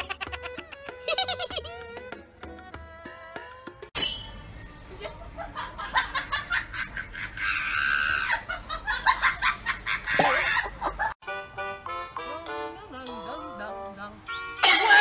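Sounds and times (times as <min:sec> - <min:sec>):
laughter: 0:00.0 - 0:01.8, 0:04.9 - 0:11.2
sharp high-pitched sound: 0:04.0 - 0:04.7.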